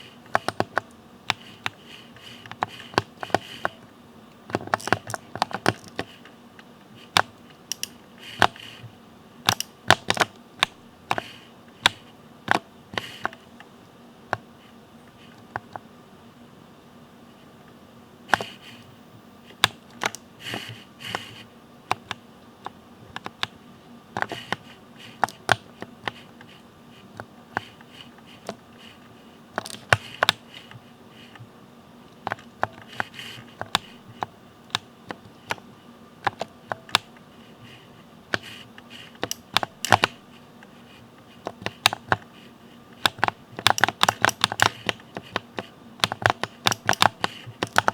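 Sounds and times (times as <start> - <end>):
mechanical keyboard keys clacking: 0.3 - 1.8, 4.4 - 6.2, 7.1 - 8.8, 9.5 - 13.4, 19.5 - 26.4, 29.6 - 31.5, 32.2 - 37.2, 39.1 - 40.2, 41.4 - 42.3, 43.0 - 47.9.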